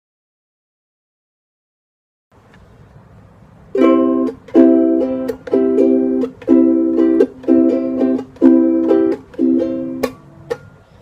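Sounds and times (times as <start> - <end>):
ukulele strumming chords: 3.7 - 11.0.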